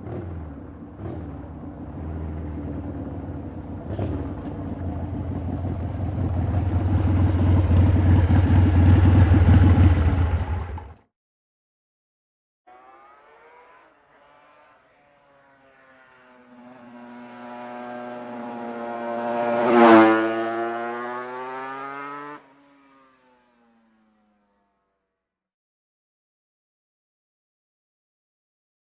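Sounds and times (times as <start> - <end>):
motorcycle passing by: 0.0 - 11.0, 12.7 - 25.0.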